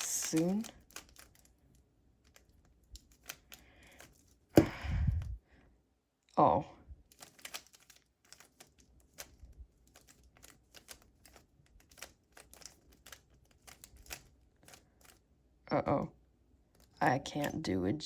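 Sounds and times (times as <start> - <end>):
puzzle cube clicking: 0.0 - 5.2, 7.1 - 15.2.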